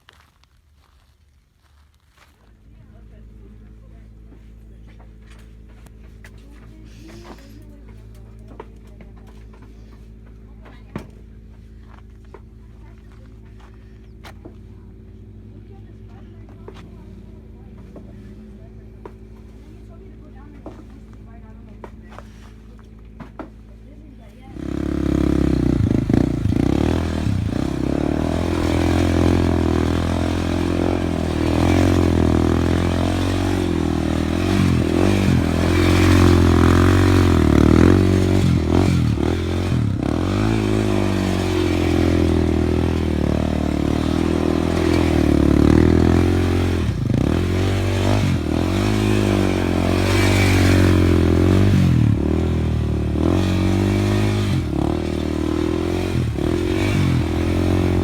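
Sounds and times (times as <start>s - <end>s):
rattling and scraping: 24.3s - 58.0s
vehicle engine revving under load: 24.5s - 58.0s.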